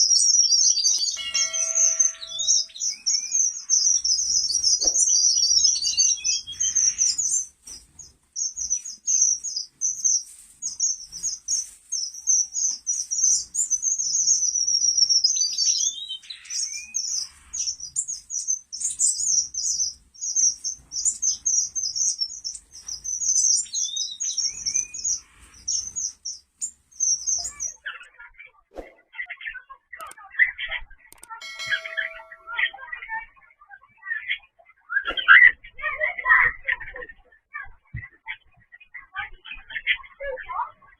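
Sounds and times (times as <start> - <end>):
finches chirping: 0.0 - 27.8, 31.2 - 32.9
lower falling bird calls: 0.0 - 27.8, 31.4 - 32.7.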